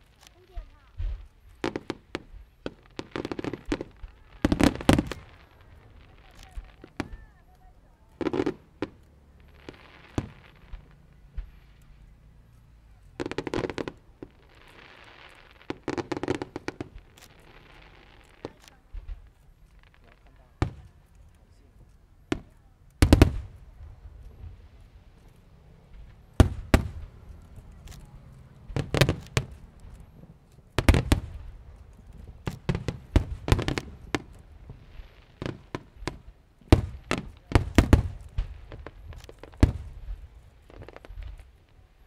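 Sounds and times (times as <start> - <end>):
fireworks bursting: 0.0 - 42.0.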